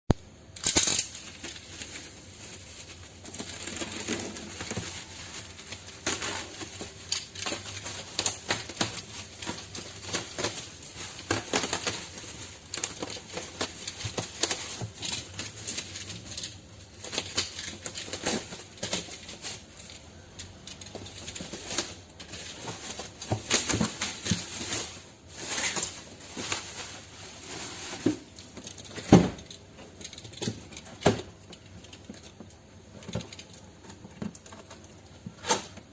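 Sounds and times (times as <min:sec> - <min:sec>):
rustling of objects: 0:00.1 - 0:35.9
objects clicking and knocking: 0:00.2 - 0:27.0.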